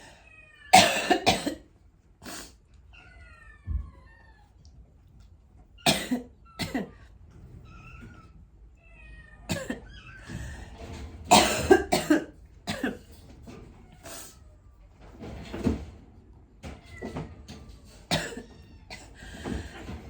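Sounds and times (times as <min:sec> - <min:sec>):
short sharp coughs: 0:00.8 - 0:01.6, 0:11.3 - 0:13.0.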